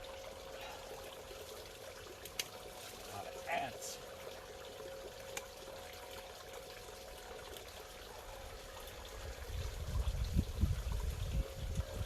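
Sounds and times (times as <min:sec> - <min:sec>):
bubbling trickling water: 0:00.0 - 0:12.0.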